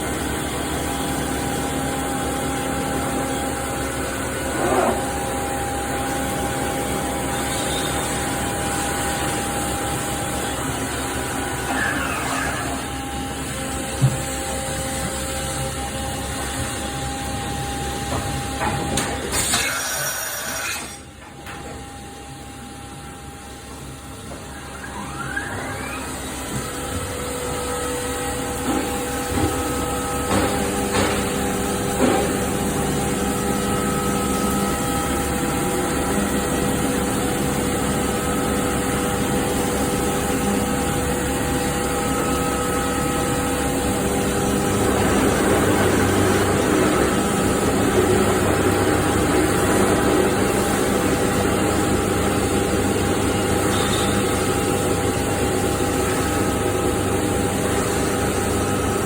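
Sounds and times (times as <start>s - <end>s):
grainy metal cutting noise: 19.3s - 21.1s.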